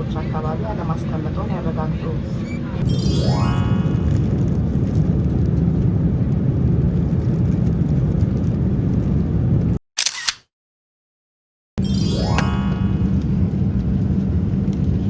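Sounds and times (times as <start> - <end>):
jet engine rumble in cabin: 0.0 - 2.9, 3.8 - 9.8, 12.8 - 15.0.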